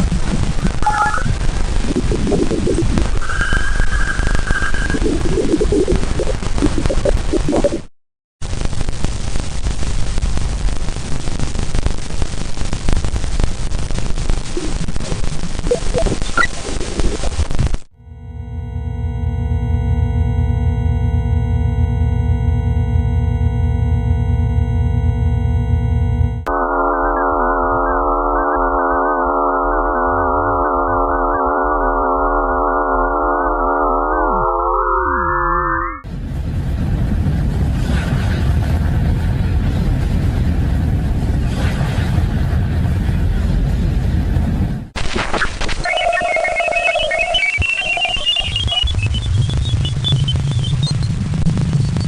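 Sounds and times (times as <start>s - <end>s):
eerie electronic drone: 0.0s - 7.8s, 18.0s - 44.7s, 45.8s - 52.0s
low rumble: 0.0s - 7.8s, 36.0s - 45.0s, 48.6s - 52.0s
dense crackling static: 0.0s - 34.8s, 36.0s - 52.0s.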